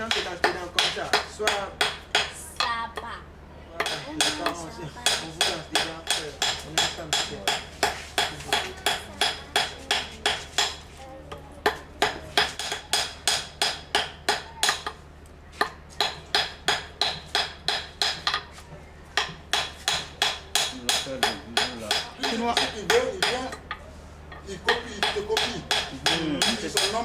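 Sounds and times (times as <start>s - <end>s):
hammer striking metal: 0.0s - 2.7s, 3.8s - 10.8s, 11.6s - 15.0s, 15.6s - 18.5s, 19.2s - 27.0s.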